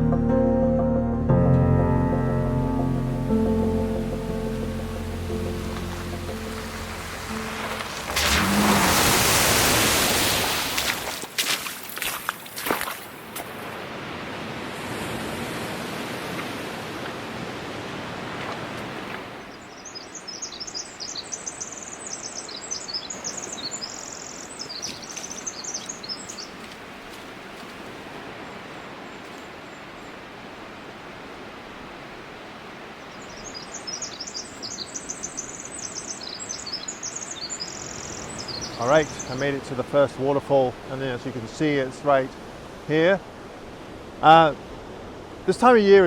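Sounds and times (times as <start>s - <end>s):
water rushing: 2.2s - 21.2s, 23.0s - 46.0s
songbird twittering: 3.5s - 8.8s, 19.4s - 26.7s, 33.0s - 39.6s.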